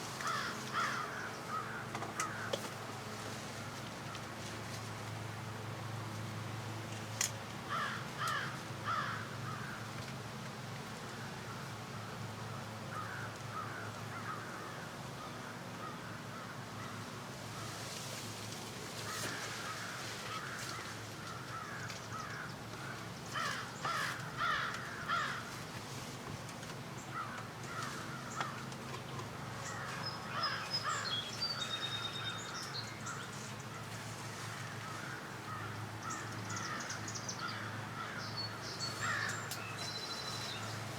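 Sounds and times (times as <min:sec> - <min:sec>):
crows cawing: 0:00.2 - 0:02.6, 0:07.7 - 0:09.8, 0:12.9 - 0:14.9, 0:19.1 - 0:25.5, 0:27.1 - 0:28.6, 0:29.7 - 0:31.1, 0:34.5 - 0:38.3, 0:39.0 - 0:39.4.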